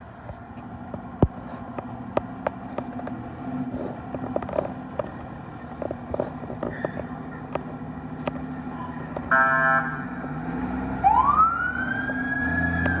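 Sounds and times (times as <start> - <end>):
engine running steadily: 0.0 - 10.0
sharp clicks and knocks: 0.2 - 9.3.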